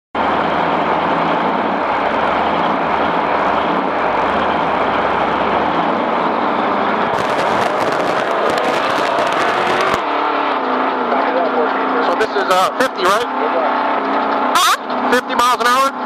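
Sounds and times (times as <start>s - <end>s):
vehicle driving at speed: 0.2s - 16.0s
rapid crackle of clicks: 7.1s - 10.1s.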